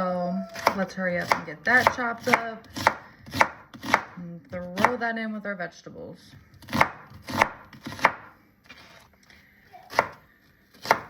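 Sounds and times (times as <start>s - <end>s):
knife chopping on cutting board: 0.6s - 5.0s, 6.6s - 8.3s, 10.8s - 11.0s.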